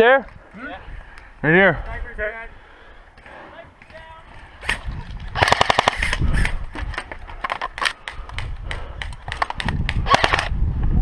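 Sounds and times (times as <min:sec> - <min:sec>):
airsoft guns firing: 0:05.4 - 0:06.3, 0:07.8 - 0:10.5.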